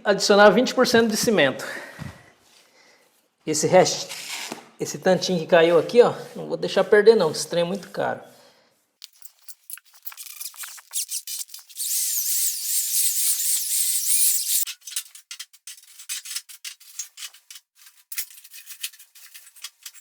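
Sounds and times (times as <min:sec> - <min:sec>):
mortar scraping and rubbing: 0:09.0 - 0:14.8.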